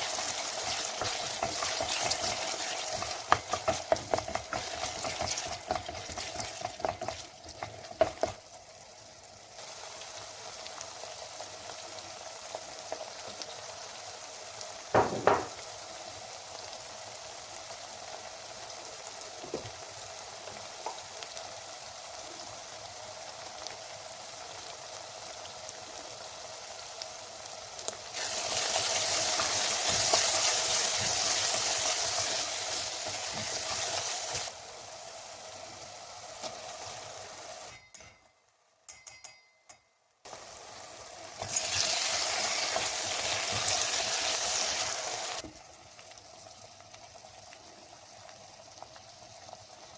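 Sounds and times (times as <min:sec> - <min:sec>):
stirring in a pot: 0:00.0 - 0:08.5
food sizzling in oil: 0:00.0 - 0:38.2, 0:40.2 - 0:49.9.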